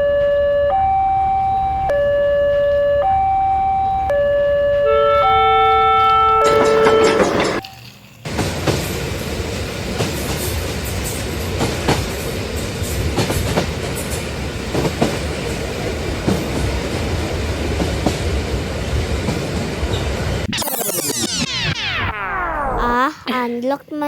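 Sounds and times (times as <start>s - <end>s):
track clicks: 3.0s - 7.7s
model train rumbling on track: 5.2s - 20.5s.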